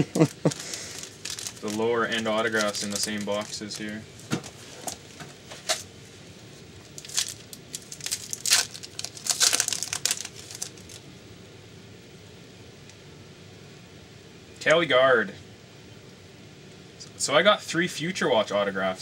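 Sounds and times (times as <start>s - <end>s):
card pack crinkling and rustling: 0.2s - 5.9s, 6.8s - 11.0s.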